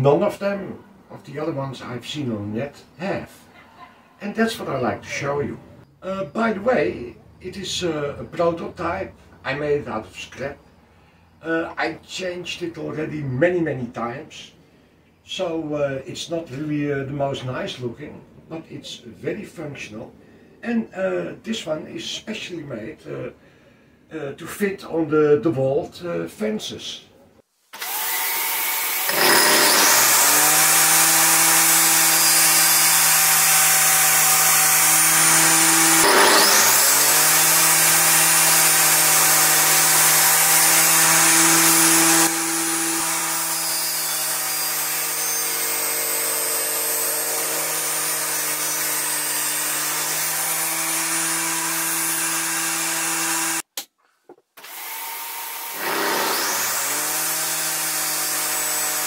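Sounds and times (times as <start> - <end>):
table saw motor running: 27.8 - 53.6, 54.6 - 59.0.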